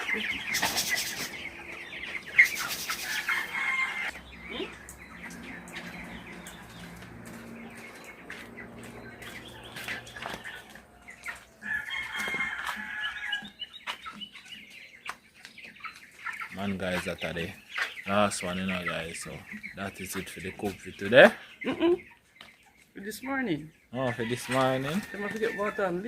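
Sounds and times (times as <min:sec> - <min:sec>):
chickens clucking and calling: 0:00.0 - 0:26.0.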